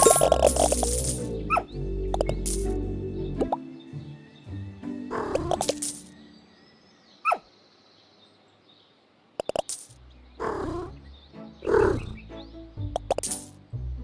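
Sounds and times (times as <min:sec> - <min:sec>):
roar-like growls: 0:00.0 - 0:03.6, 0:10.4 - 0:11.0, 0:11.6 - 0:12.2
music with low bass: 0:00.0 - 0:03.7, 0:12.1 - 0:14.0.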